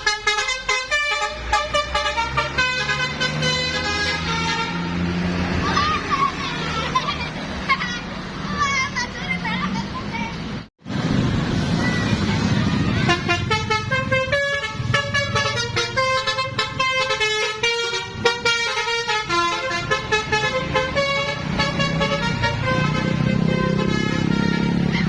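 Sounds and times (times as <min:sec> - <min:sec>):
bus horn playing a tune: 0:00.0 - 0:05.1, 0:12.9 - 0:25.0.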